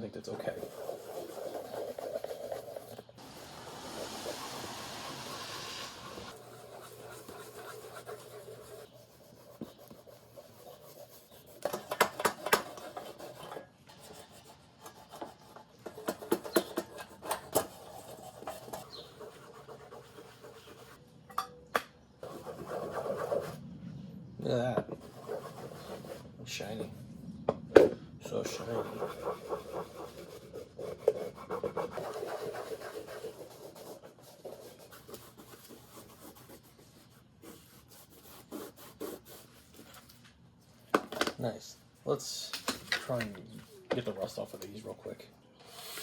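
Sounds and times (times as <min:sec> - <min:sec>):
cloth rag rubbing leather: 0:03.2 - 0:06.4.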